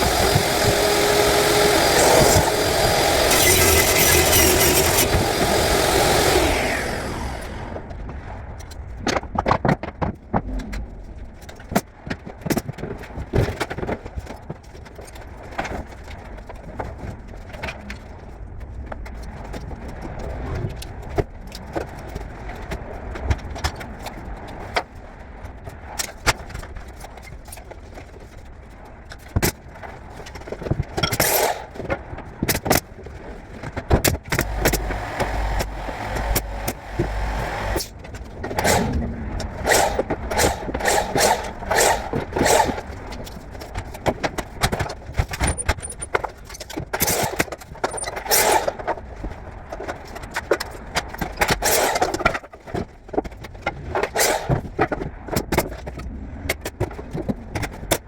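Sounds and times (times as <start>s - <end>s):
burst of noise: 0.0s - 7.8s
power tool motor winding down: 0.0s - 8.0s, 31.1s - 31.8s, 34.3s - 43.0s, 48.2s - 48.9s.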